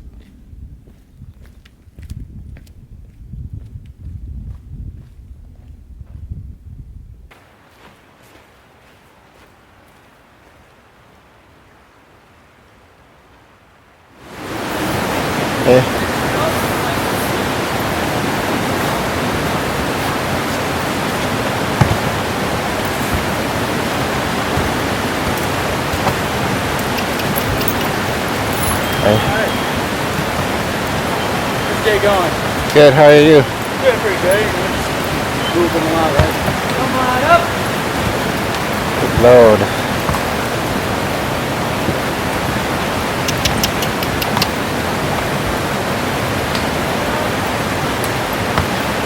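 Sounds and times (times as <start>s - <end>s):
river water rushing: 14.1s - 49.0s
sharp clicks: 26.8s - 28.1s, 43.2s - 44.6s
faint ticks: 43.3s - 44.6s.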